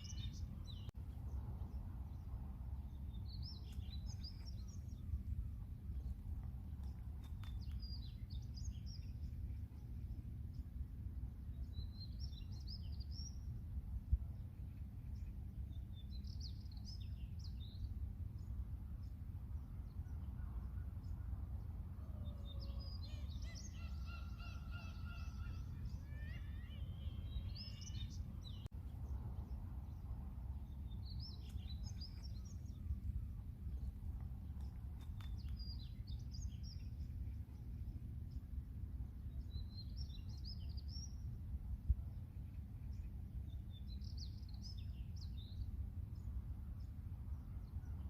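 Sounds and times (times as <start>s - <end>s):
steady low rumble: 0.0s - 23.8s, 24.5s - 48.0s
seagulls calling: 23.2s - 28.0s.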